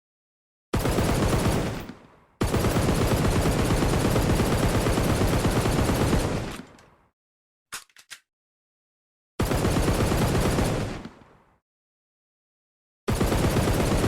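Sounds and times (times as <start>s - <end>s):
automatic gunfire: 0.8s - 6.8s, 9.4s - 11.2s, 13.1s - 14.0s.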